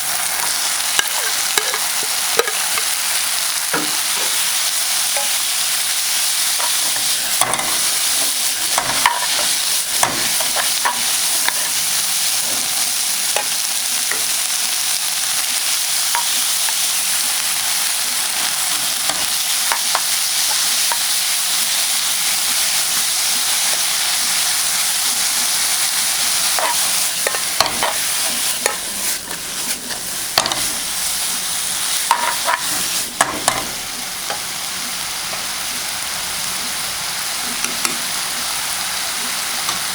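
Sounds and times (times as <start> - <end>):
vegetables sizzling in a pan: 0.0 - 39.9.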